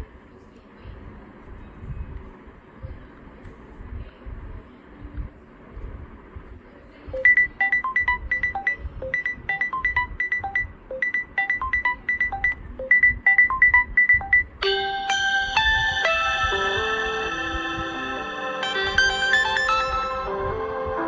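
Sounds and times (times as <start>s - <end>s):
bright phone ringtone: 7.2s - 20.4s
ringtone with held notes: 7.2s - 21.0s.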